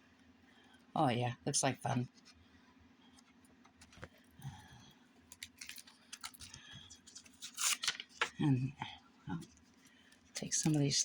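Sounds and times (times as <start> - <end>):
paper pages rustling: 3.3 - 4.2, 5.3 - 8.4
pages flipping: 3.7 - 4.2, 5.3 - 8.4.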